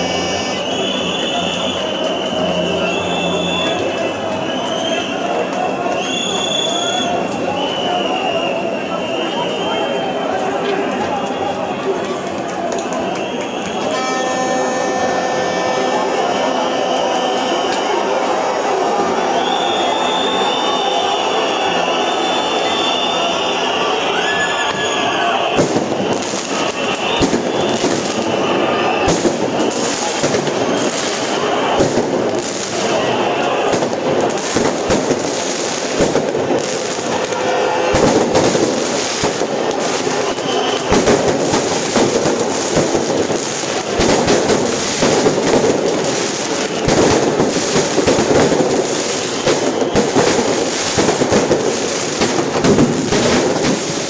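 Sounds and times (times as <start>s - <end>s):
angry crowd shouting: 0.0s - 54.0s
sharp bangs and pops: 25.5s - 54.0s.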